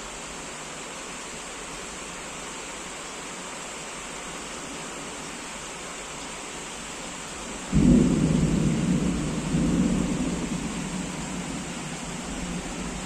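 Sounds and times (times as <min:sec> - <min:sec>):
heavy rain hissing: 0:00.0 - 0:13.0
thunderclap rumbling: 0:07.7 - 0:13.0.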